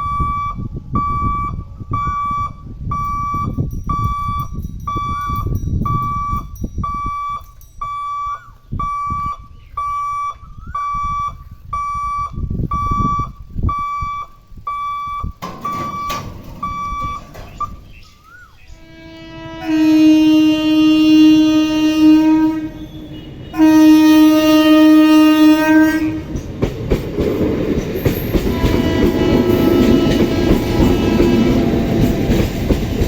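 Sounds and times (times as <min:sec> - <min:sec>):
level crossing warning buzzer beeping: 0:00.0 - 0:26.1.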